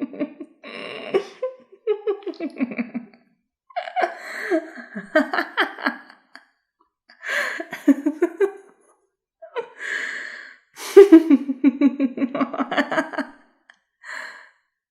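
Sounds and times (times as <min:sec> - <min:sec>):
woman cackling: 0:10.8 - 0:13.3.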